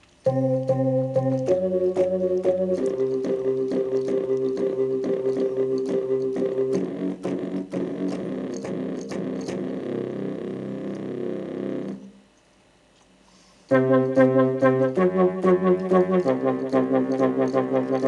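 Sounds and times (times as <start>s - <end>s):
held higher synth tone: 0.3s - 7.6s
synth bass line: 0.3s - 12.1s, 13.7s - 18.0s.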